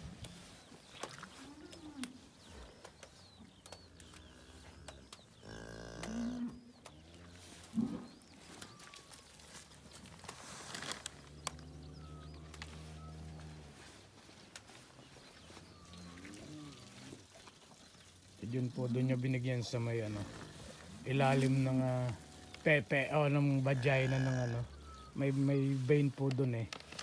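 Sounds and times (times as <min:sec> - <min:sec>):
faint birds calling: 0:00.0 - 0:27.0
cows mooing: 0:04.0 - 0:08.1, 0:11.2 - 0:13.9, 0:15.8 - 0:17.3, 0:18.9 - 0:25.9.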